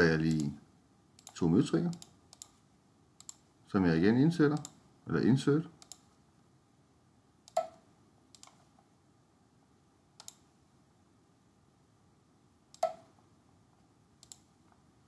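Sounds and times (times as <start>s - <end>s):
faint room hiss: 0.0s - 15.0s
computer mouse clicks: 1.2s - 2.6s, 3.2s - 3.5s, 4.5s - 4.8s, 5.8s - 6.1s, 7.5s - 8.7s, 10.2s - 10.5s, 12.7s - 13.2s, 14.2s - 14.5s.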